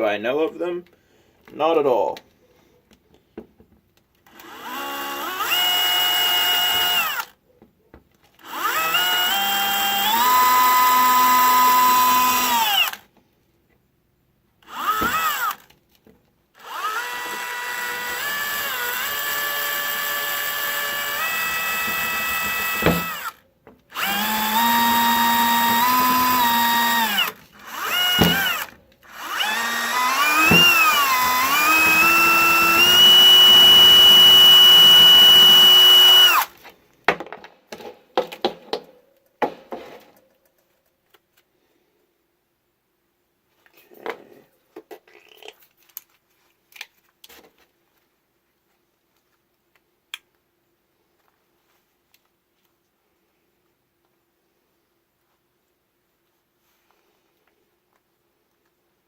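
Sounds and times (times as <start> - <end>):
cordless drill motor whine: 4.3 - 7.3, 8.4 - 13.0, 14.7 - 15.6, 16.6 - 36.5.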